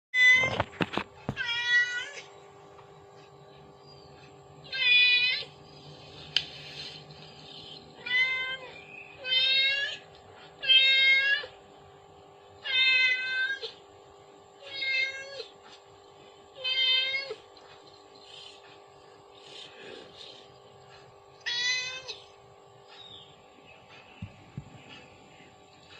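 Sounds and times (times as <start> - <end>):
cat meowing: 8.0 - 10.0, 12.6 - 13.8, 14.6 - 15.5, 21.4 - 22.3.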